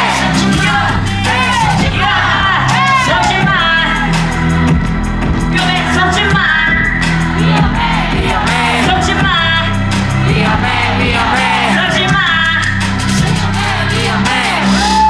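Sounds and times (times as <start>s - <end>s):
audience shouts and whoops: 0.0s - 3.6s, 14.6s - 15.0s
backing music with steady beat: 0.0s - 15.0s
person singing: 0.0s - 15.0s.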